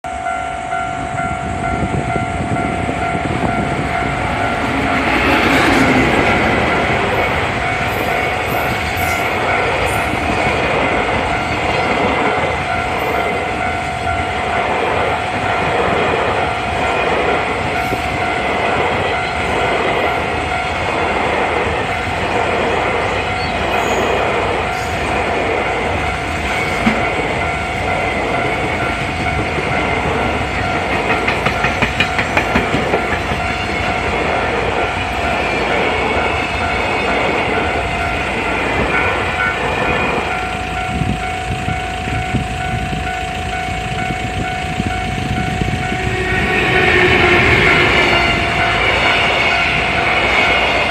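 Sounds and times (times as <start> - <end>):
freight train passing: 0.0 - 50.9
train wheels clacking on rail joints: 15.6 - 50.9.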